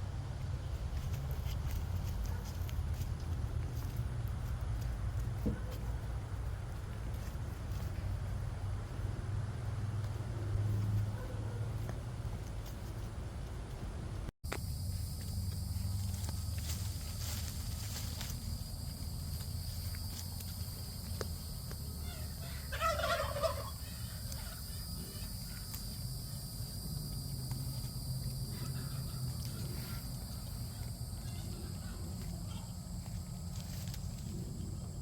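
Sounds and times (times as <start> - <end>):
steady low rumble: 0.0 - 35.0
high-pitched insect-like tones: 14.5 - 31.5.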